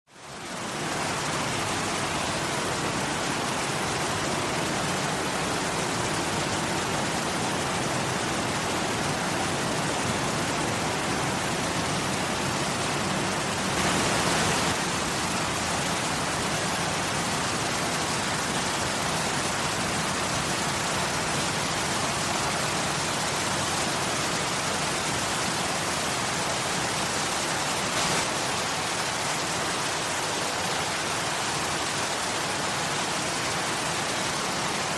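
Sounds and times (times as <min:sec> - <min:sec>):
waterfall rushing: 0:00.2 - 0:34.9.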